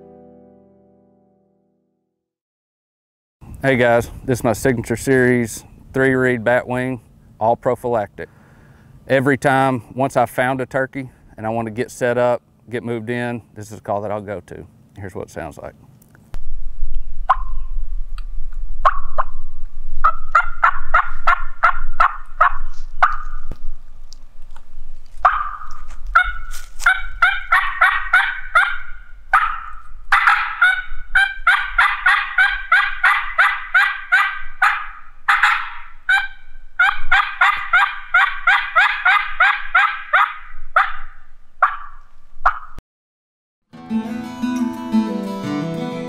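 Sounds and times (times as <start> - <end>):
turkey mouth call yelping: 18.8 - 19.4, 20.0 - 23.4, 25.2 - 42.8.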